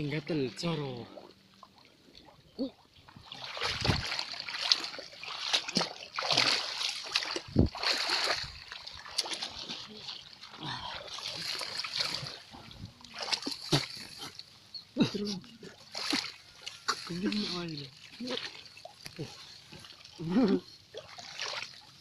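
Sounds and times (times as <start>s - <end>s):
splashing in shallow water: 0.0s - 22.0s
dull low thumps: 7.5s - 7.8s.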